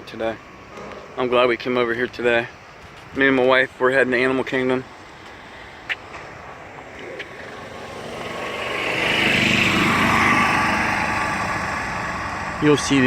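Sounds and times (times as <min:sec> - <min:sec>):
golf cart motor passing: 0:04.8 - 0:13.0.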